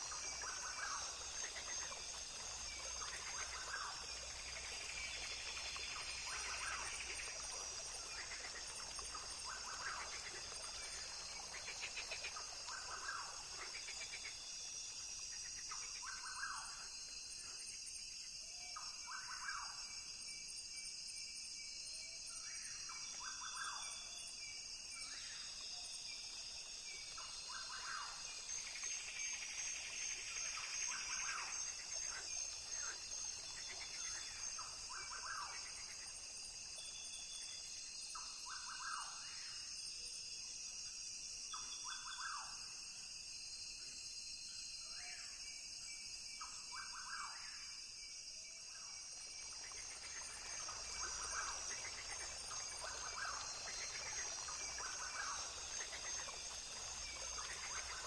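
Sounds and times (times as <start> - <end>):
insects droning: 0.0 - 58.0.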